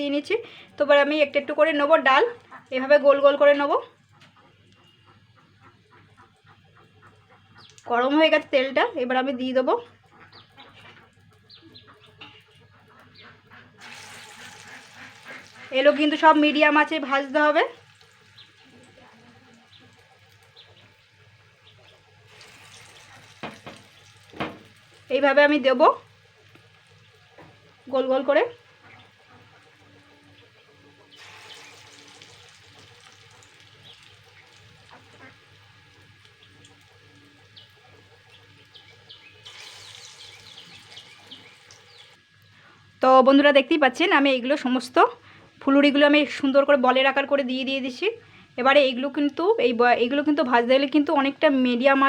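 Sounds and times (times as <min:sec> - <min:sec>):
birds chirping: 0:04.0 - 0:08.4, 0:09.8 - 0:22.2, 0:28.4 - 0:42.6
fritters sizzling in oil: 0:13.8 - 0:42.4.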